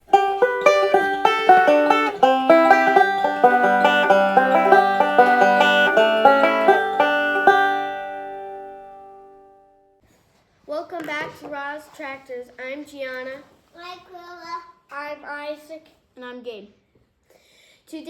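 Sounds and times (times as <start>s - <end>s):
quick banjo tune: 0.0s - 9.6s.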